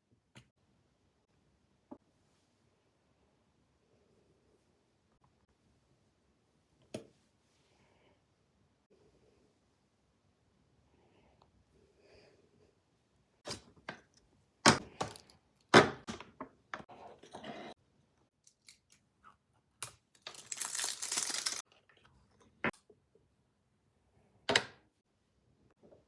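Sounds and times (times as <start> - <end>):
packaging crinkling: 20.2 - 21.6
packaging tearing: 20.2 - 21.6.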